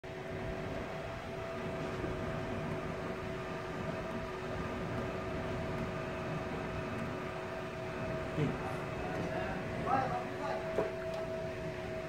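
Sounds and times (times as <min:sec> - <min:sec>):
steady machine hum: 0:00.0 - 0:12.0.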